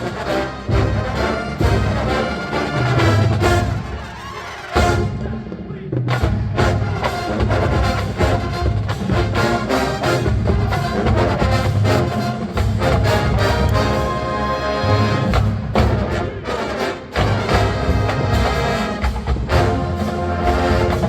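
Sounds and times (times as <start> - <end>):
drums and percussion: 0.0 - 21.0
marching band brass: 0.0 - 21.0.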